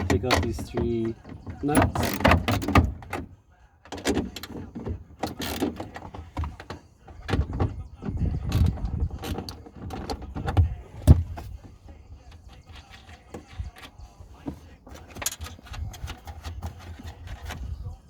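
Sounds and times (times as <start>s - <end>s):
parts rattling: 0.0s - 18.0s.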